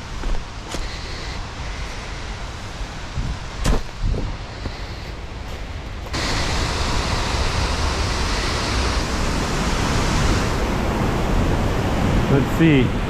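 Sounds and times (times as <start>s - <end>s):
waterfall rushing: 6.2s - 13.0s.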